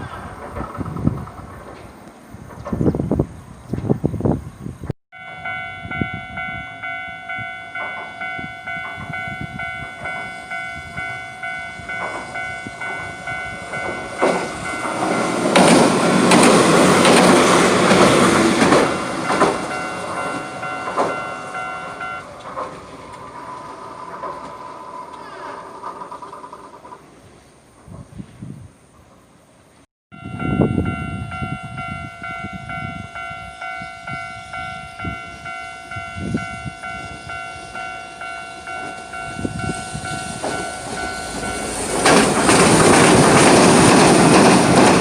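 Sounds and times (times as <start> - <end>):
tram wheels rushing on rail: 0.0 - 29.2, 30.3 - 45.0
level-crossing warning bell ringing: 5.1 - 24.2, 30.1 - 45.0.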